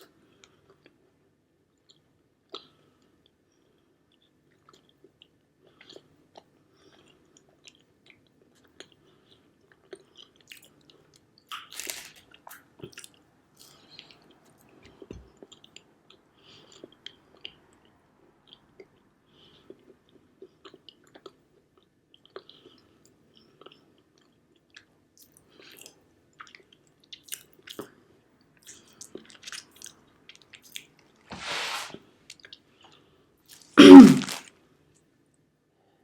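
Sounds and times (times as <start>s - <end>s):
person chewing: 11.5s - 14.2s, 33.8s - 34.4s.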